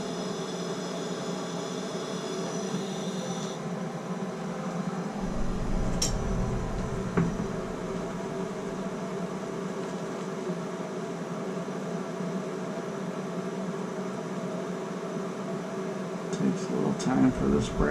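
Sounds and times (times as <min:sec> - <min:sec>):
low rumble: 0:05.1 - 0:09.6, 0:17.3 - 0:17.9.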